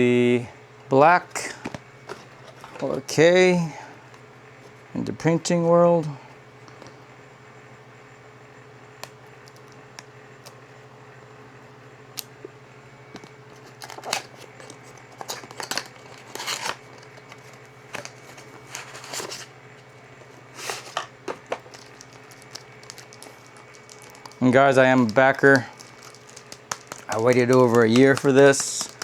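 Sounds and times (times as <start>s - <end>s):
plastic packaging crinkling and tearing: 13.6s - 19.5s, 20.5s - 29.0s.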